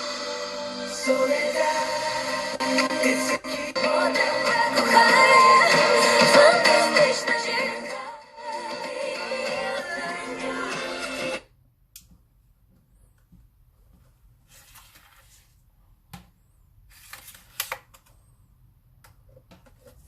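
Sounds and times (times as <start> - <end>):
music with singing: 0.0 - 11.5.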